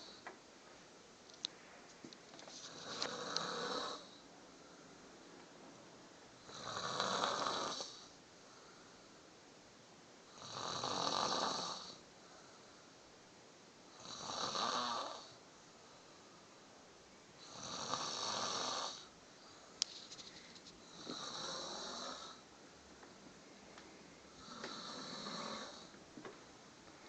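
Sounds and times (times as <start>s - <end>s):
woman snoring: 2.7s - 4.2s, 6.4s - 8.1s, 10.3s - 12.0s, 13.9s - 15.4s, 17.4s - 19.1s, 20.9s - 22.4s, 24.3s - 25.9s.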